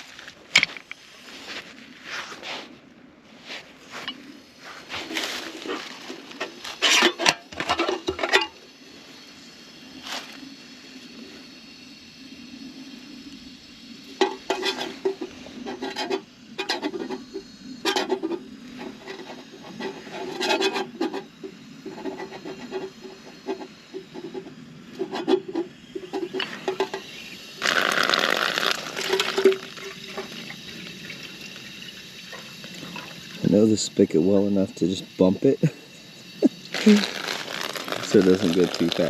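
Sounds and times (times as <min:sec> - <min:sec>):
footsteps crunching: 0:03.4 - 0:06.3, 0:36.8 - 0:39.0
water rushing from spigot: 0:04.0 - 0:39.0.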